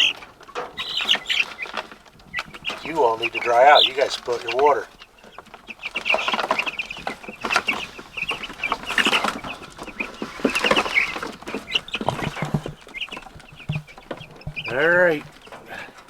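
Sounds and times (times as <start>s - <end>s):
chicks peeping: 0.0s - 16.0s
rustling: 0.0s - 16.0s
knocks: 7.0s - 16.0s.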